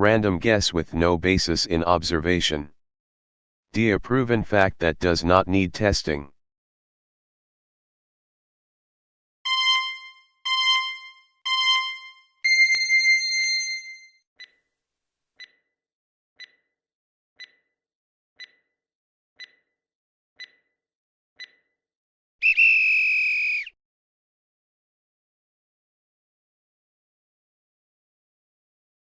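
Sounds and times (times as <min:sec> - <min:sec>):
timer ticking: 0:09.5 - 0:13.0, 0:15.4 - 0:15.6, 0:16.4 - 0:16.6, 0:17.4 - 0:17.6, 0:18.4 - 0:18.7, 0:19.4 - 0:19.7, 0:20.4 - 0:20.7, 0:21.4 - 0:21.7
harsh buzzer: 0:09.5 - 0:14.0
short beeps: 0:09.5 - 0:14.1.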